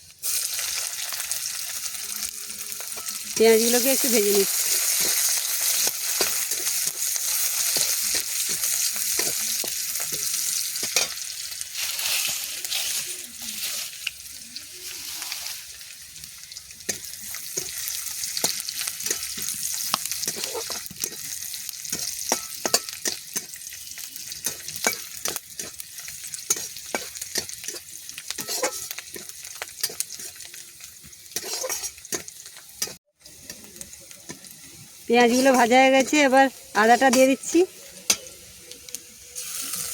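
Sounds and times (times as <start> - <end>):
onions sizzling in hot oil: 0.0 - 39.9
spatula scraping and tapping pan: 4.8 - 11.2, 16.8 - 23.6, 24.4 - 30.5, 31.1 - 34.5, 35.2 - 39.0.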